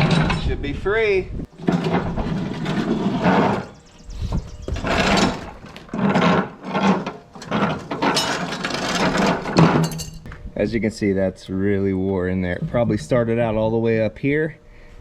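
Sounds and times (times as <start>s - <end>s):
metal scraping and rattling: 0.0s - 0.6s, 1.5s - 10.3s.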